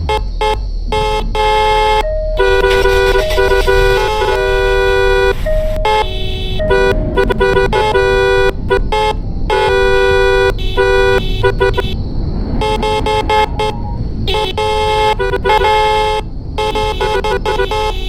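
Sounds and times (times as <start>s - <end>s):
low rumble: 0.0s - 14.5s
car horns honking: 0.0s - 18.0s.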